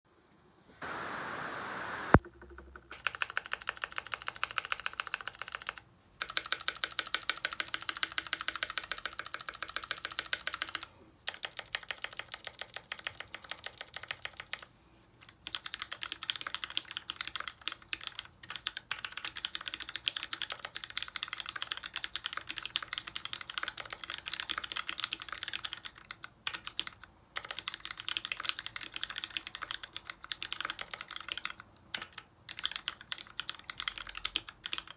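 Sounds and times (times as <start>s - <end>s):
brief hiss: 0.7s - 2.2s
mechanical keyboard typing: 2.6s - 34.9s.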